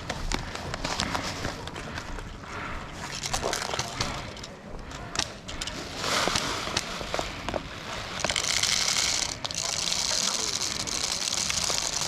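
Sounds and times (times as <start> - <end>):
rustling hiss: 5.7 - 12.0.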